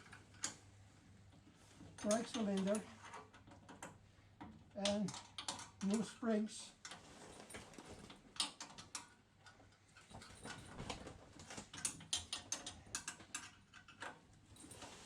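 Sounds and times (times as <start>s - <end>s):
metal parts clicking and tapping: 0.0s - 0.6s, 1.8s - 6.1s, 8.3s - 14.2s.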